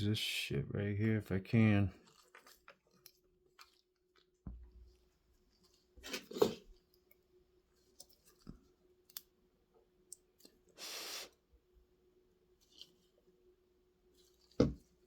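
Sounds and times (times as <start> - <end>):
brief hiss: 10.8 - 11.4.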